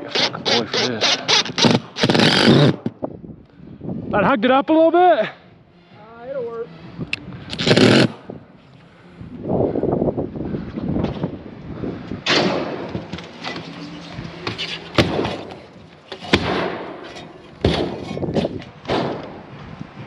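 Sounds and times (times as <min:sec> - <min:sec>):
knocks and clattering on metal roofing: 0:14.4 - 0:19.4.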